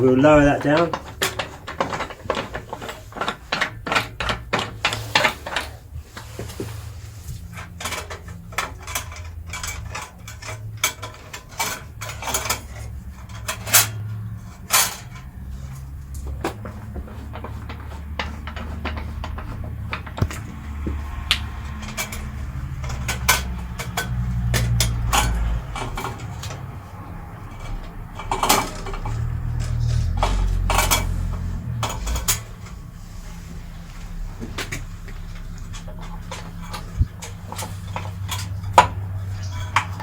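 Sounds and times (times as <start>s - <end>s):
metal parts clicking and clattering: 0.0s - 40.0s
low rumble: 19.3s - 39.8s.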